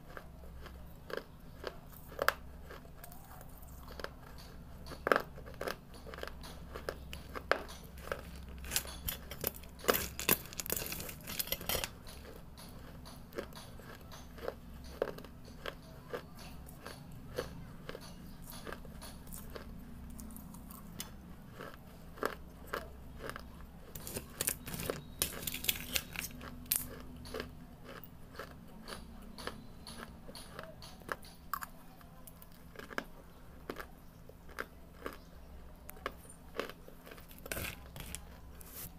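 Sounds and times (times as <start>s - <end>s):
person crunching brick: 6.8s - 12.0s, 23.2s - 28.5s, 36.6s - 38.9s.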